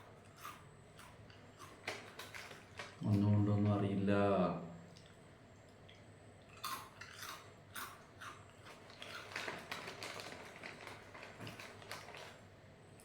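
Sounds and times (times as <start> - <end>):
person chewing crunchy biscuits: 0.0 - 3.0, 6.4 - 10.2.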